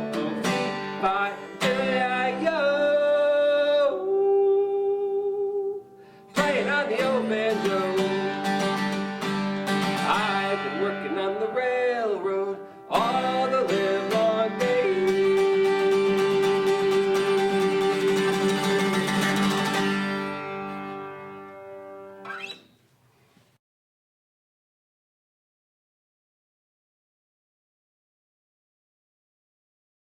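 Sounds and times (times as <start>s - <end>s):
plucked acoustic guitar: 0.0s - 4.9s, 5.6s - 22.7s.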